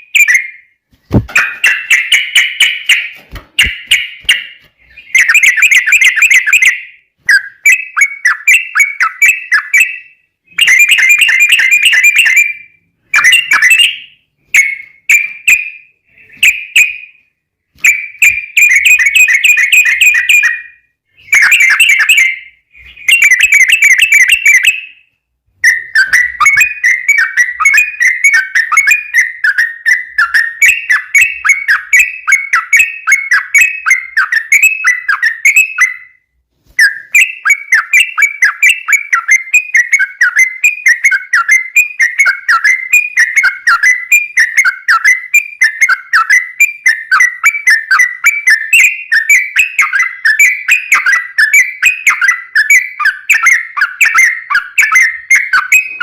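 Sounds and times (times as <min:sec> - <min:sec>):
bird singing chattering notes: 0:01.2 - 0:06.7.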